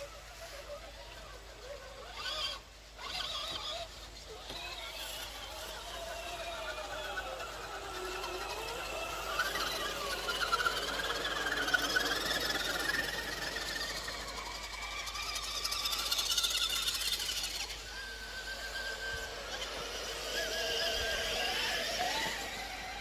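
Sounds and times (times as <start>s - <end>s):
electric motors whining: 0.0s - 23.0s.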